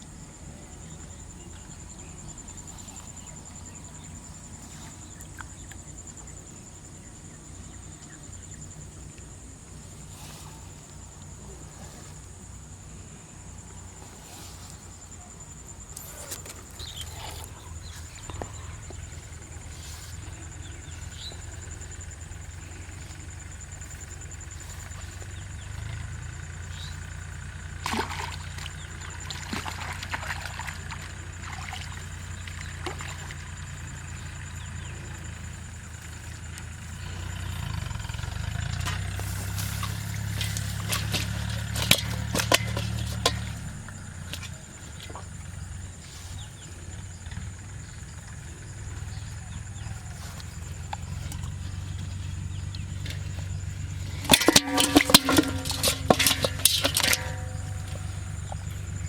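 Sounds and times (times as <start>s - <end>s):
steady low hum: 0.0s - 59.0s
water splashing and sloshing: 27.6s - 34.4s, 38.6s - 45.5s, 50.0s - 59.0s.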